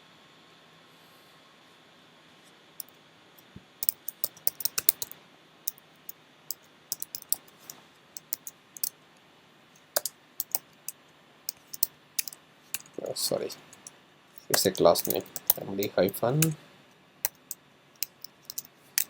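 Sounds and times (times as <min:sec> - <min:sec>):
faint steady hum: 0:00.0 - 0:19.0
computer keyboard typing: 0:03.8 - 0:05.8, 0:06.9 - 0:08.9, 0:10.0 - 0:10.6, 0:11.5 - 0:12.9, 0:13.8 - 0:15.7, 0:17.3 - 0:18.7.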